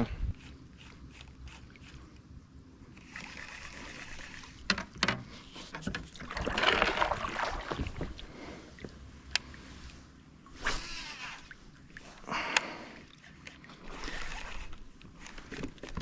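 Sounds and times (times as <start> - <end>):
water sloshing and splashing: 2.9 - 5.0, 5.7 - 16.0.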